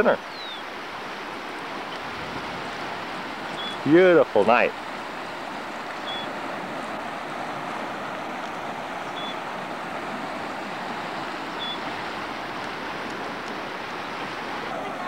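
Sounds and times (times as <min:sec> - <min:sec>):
river rushing: 0:00.0 - 0:15.0
faint high peeps: 0:03.6 - 0:03.8, 0:06.0 - 0:06.3, 0:09.2 - 0:09.4, 0:11.6 - 0:11.8.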